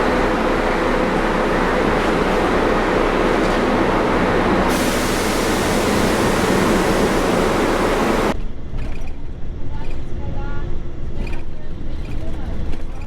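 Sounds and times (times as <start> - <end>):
loud steady rushing noise: 0.0 - 8.4.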